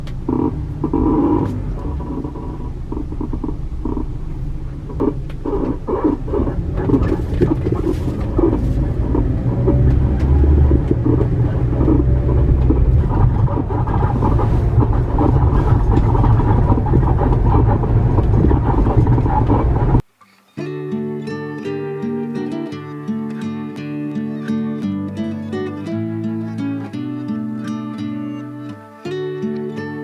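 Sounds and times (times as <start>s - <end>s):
van driving rumble: 0.0s - 20.1s
leaf spring creaking and squeaking: 0.0s - 20.7s.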